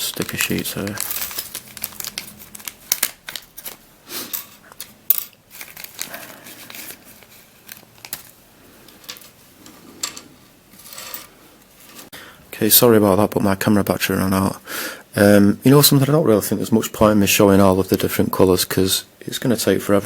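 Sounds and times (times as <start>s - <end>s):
sticker sheets rustling: 0.0s - 9.4s.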